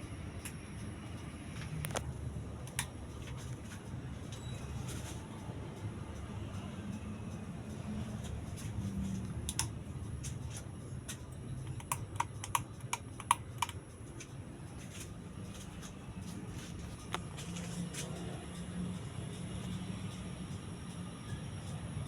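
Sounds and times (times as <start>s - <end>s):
sharp light clicks: 11.1s - 13.8s.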